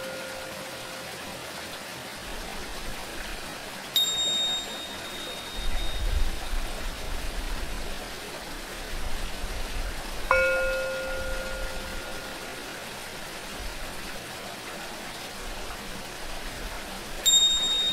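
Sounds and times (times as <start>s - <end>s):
tingsha cymbals ringing: 0.0s - 1.2s, 4.0s - 6.8s, 10.3s - 13.1s, 17.2s - 17.9s
flowing water: 0.0s - 17.9s.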